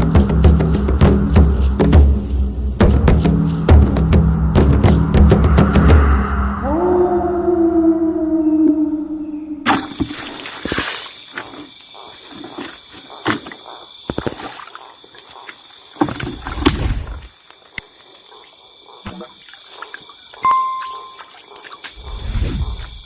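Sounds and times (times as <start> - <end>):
music: 0.0 - 6.7
low rumble: 0.0 - 9.6
crickets trilling: 0.0 - 23.0.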